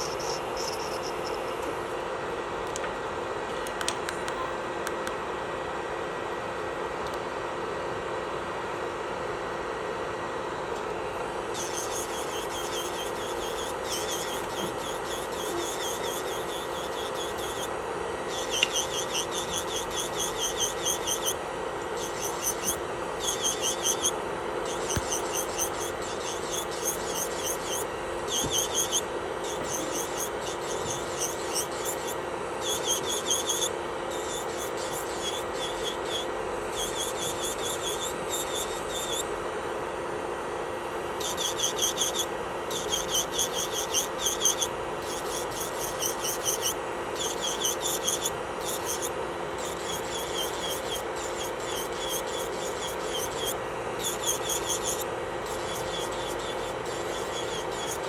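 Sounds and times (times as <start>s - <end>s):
drill bit rasping on nail: 0.0s - 1.6s, 11.5s - 39.3s, 41.2s - 58.0s
electric nail drill whine: 0.0s - 2.1s, 11.0s - 39.6s, 40.9s - 58.0s.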